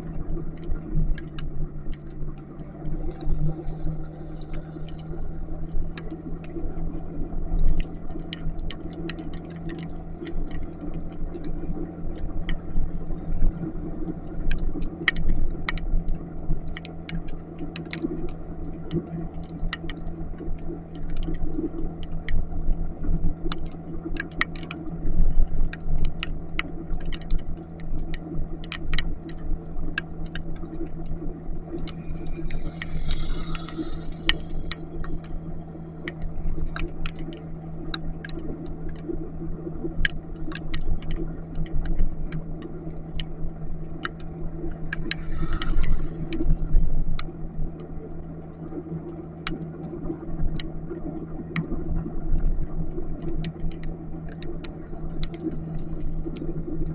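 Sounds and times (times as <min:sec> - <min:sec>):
raindrops ticking on camera: 0:00.0 - 0:56.9
wind and road rumble: 0:00.0 - 0:56.9
motorcycle engine cruising: 0:31.9 - 0:36.0.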